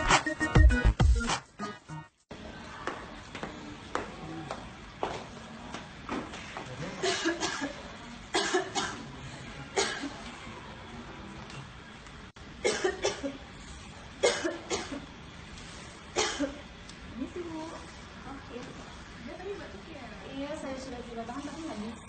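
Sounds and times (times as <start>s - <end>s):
woman coughing: 7.0s - 9.1s, 9.8s - 10.2s, 12.6s - 13.4s, 14.2s - 15.1s, 16.2s - 16.6s.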